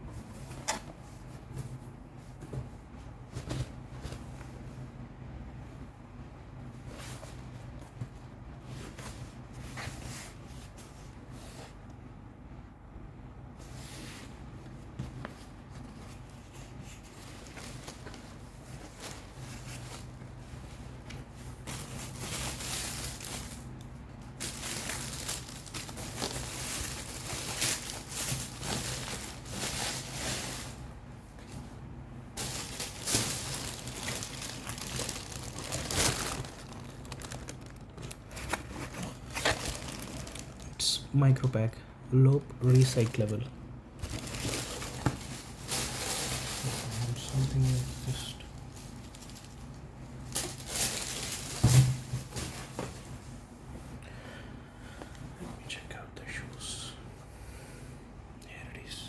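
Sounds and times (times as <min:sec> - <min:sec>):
steady low hum: 0:00.0 - 0:59.0
packaging crinkling and rustling: 0:15.8 - 0:30.9, 0:32.4 - 0:41.4, 0:42.6 - 0:53.2.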